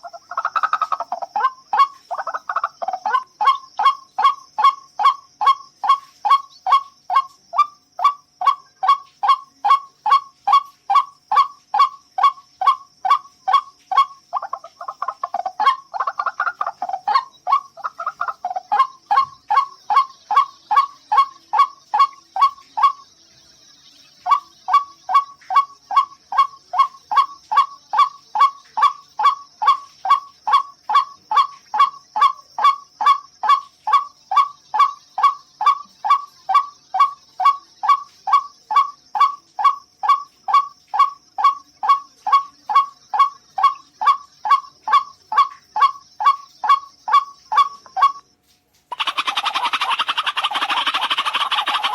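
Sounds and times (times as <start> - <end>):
waterhen harsh calls: 0.0 - 23.0, 48.9 - 51.9.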